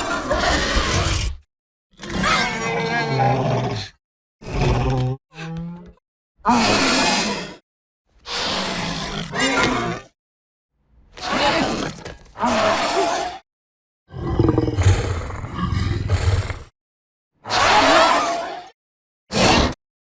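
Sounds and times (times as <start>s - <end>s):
creature roaring: 14.1s - 16.7s.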